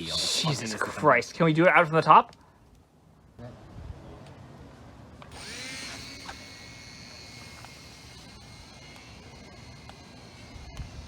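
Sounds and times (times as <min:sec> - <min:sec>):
small electric motor whining: 0:05.2 - 0:11.0.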